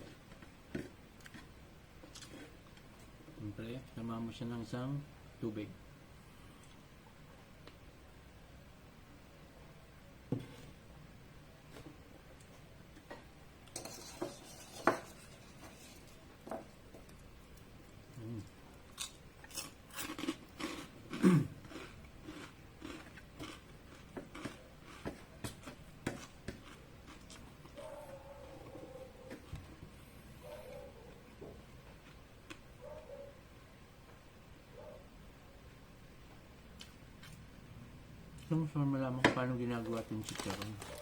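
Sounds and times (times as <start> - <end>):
crunching and chewing pork rind: 0.0 - 3.1, 17.0 - 29.5, 31.7 - 32.8, 39.8 - 41.0.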